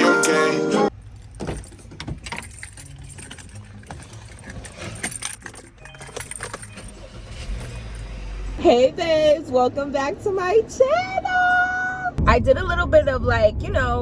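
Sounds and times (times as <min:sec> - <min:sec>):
metallic jingles of keys: 0:00.9 - 0:08.1
low steady rumble: 0:06.3 - 0:14.0.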